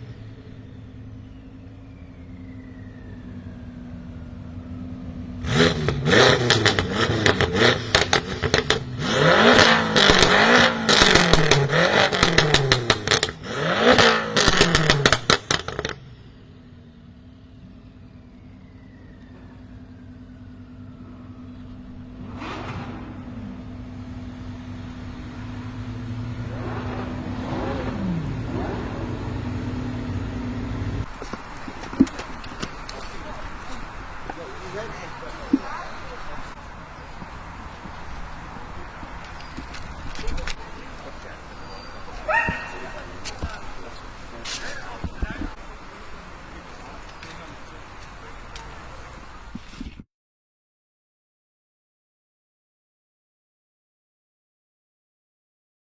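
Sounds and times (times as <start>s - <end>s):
car engine idling: 0.0s - 22.3s, 22.9s - 49.5s
car engine revving: 0.0s - 49.4s
exhaust pops and crackles: 5.4s - 16.2s, 26.5s - 50.0s.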